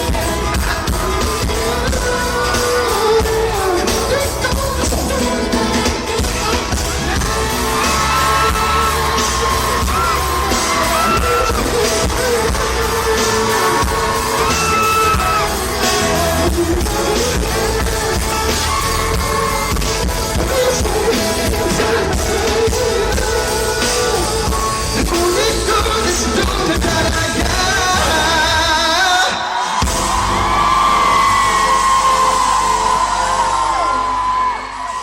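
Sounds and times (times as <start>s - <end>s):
crowd yelling: 0.0s - 26.5s, 27.7s - 35.0s
live pop band playing: 0.0s - 35.0s
singer holding long notes: 0.0s - 35.0s.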